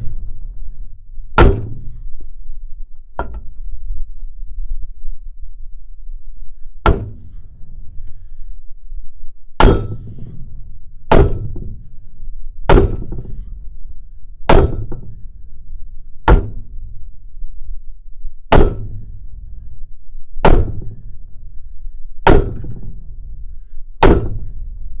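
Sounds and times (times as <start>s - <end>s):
metal clanging strikes: 1.4s - 2.0s, 9.6s - 10.5s, 14.5s - 15.2s, 24.0s - 24.5s.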